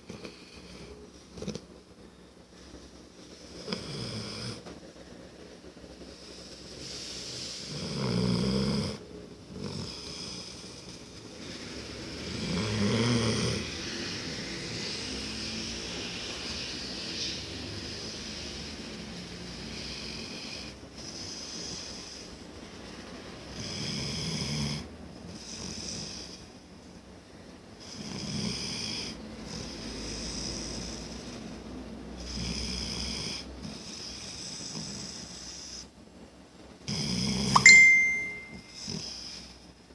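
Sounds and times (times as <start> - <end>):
deep loud snoring: 3.6 - 4.6, 6.9 - 9.0, 12.1 - 16.3, 23.5 - 26.4, 27.8 - 31.3, 32.2 - 35.8, 36.9 - 37.5.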